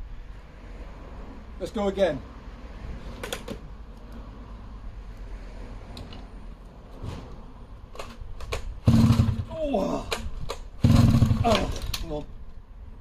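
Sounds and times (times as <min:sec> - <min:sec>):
chainsaw handling clicks and knocks: 0:07.9 - 0:08.7, 0:11.5 - 0:12.2
chainsaw engine starting: 0:08.5 - 0:09.7, 0:10.8 - 0:12.1.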